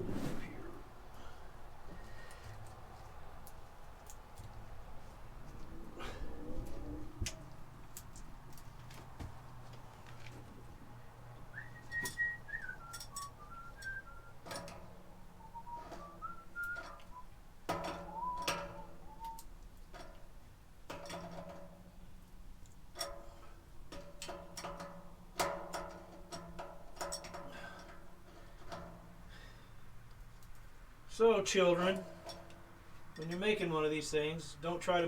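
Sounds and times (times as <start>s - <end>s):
person whistling a tune: 11.5s - 14.4s, 15.4s - 17.3s, 18.0s - 19.5s
clicks handling plumbing parts: 12.9s - 14.9s, 23.9s - 29.0s.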